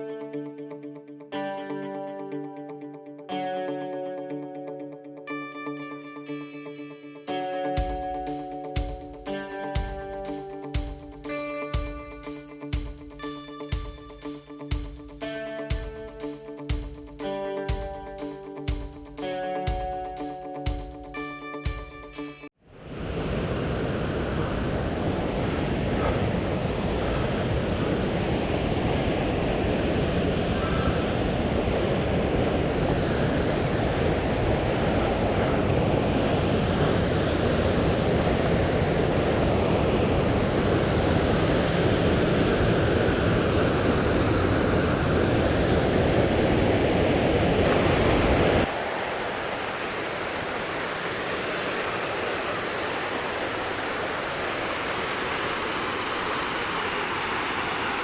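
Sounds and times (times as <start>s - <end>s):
river and waterfall rushing: 22.8s - 58.0s.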